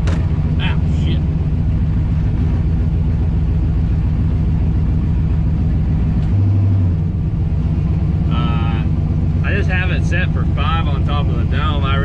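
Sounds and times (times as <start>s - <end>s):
car engine from inside car: 0.0s - 12.0s.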